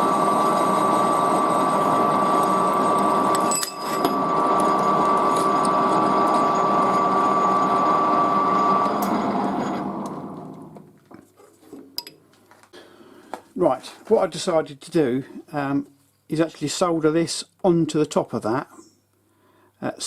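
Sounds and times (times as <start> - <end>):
electric machine tool whining: 0.0 - 10.9.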